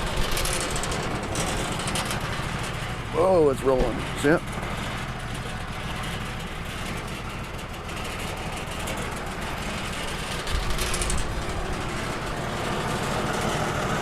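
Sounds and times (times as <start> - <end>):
sawmill engine running: 0.0 - 14.0
heavy low thump: 3.7 - 4.1.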